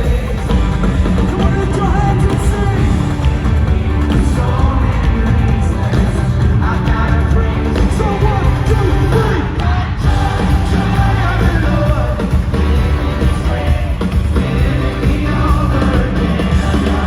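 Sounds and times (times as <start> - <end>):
song with heavy bass and drums: 0.0 - 17.0.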